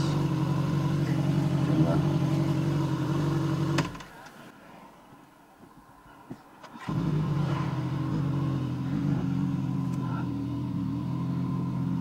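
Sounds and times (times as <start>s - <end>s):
motorcycle engine idling: 0.0s - 4.0s, 6.8s - 12.0s.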